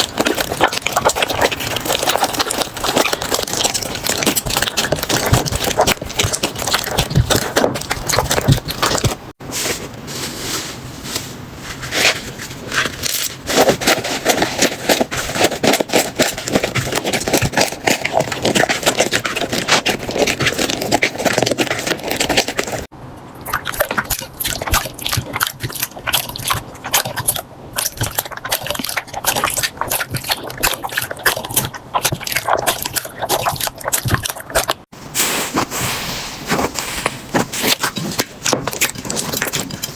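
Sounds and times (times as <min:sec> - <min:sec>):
slime squeezed crackling and popping: 0:00.0 - 0:09.4.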